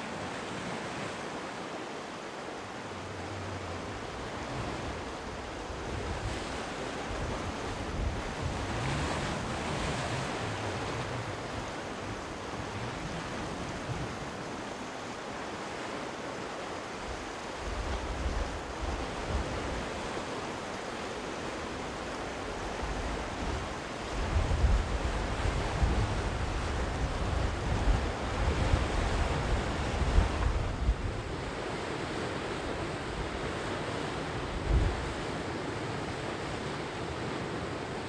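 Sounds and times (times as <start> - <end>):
sea surf washing onto shore: 0.0 - 38.0
wind buffeting microphone: 4.0 - 14.4, 22.7 - 31.6, 34.3 - 35.4.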